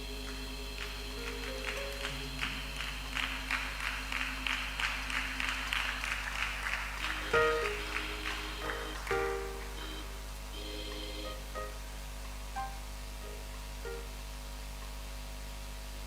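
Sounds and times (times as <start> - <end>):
people clapping in rhythm: 0.0 - 11.7
music with held chords: 0.0 - 14.5.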